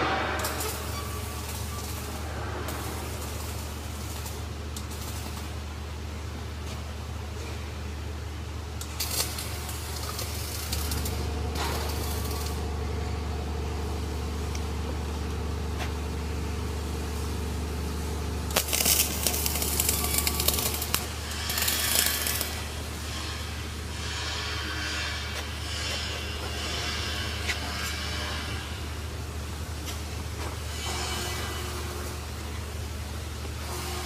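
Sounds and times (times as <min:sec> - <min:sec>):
welding arc crackling: 0:00.0 - 0:05.9, 0:08.7 - 0:28.8
low machinery hum: 0:00.0 - 0:34.0.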